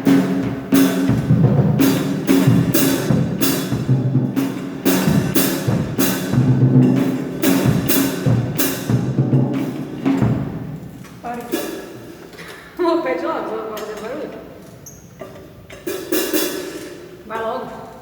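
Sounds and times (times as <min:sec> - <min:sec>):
low drum hits: 0:00.0 - 0:12.0
cymbal crashes: 0:00.0 - 0:12.2, 0:15.8 - 0:17.4.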